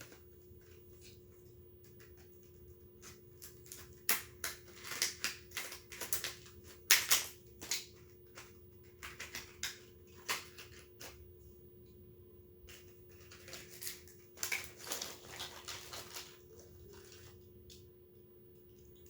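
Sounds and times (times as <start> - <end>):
faint steady hum: 0.0 - 19.0
plastic packaging crinkling: 3.0 - 11.2, 12.7 - 17.5.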